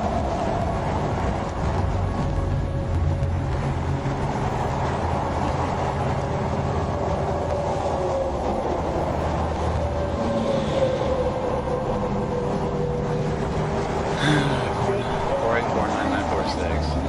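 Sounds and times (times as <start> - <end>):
vehicle road and engine rumble: 0.0 - 17.0.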